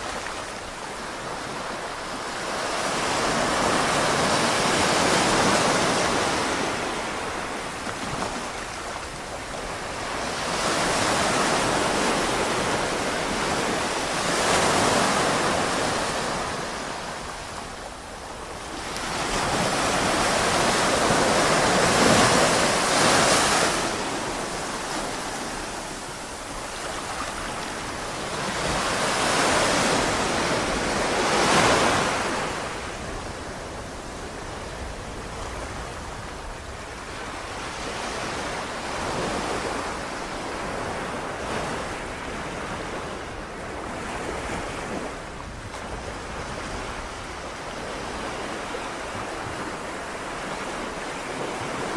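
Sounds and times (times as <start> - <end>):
surf washing onto beach: 0.0 - 51.9.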